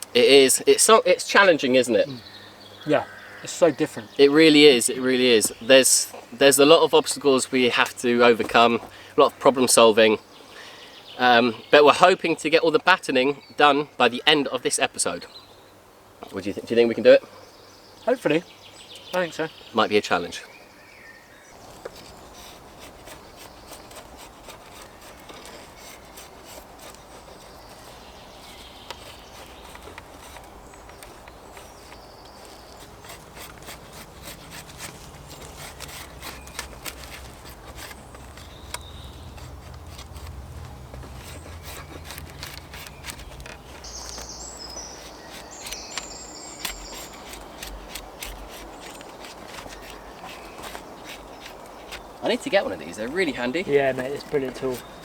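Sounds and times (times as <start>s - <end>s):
clicks and knocks of wooden poles: 21.6s - 55.0s.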